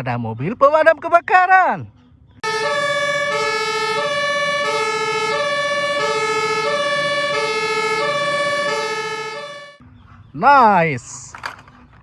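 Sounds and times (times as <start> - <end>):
two-tone fire engine siren: 2.4 - 9.8.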